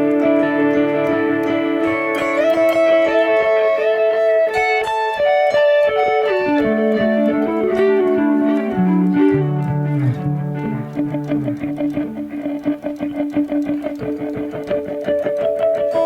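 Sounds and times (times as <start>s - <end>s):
electric guitar notes with reverb: 0.0s - 16.0s.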